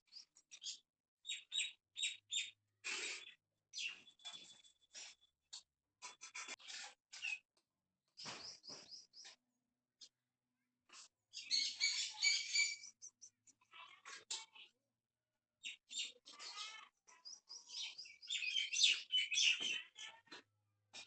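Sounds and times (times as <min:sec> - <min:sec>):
animal chirps and squeaks: 0:11.0 - 0:14.7, 0:15.6 - 0:20.4.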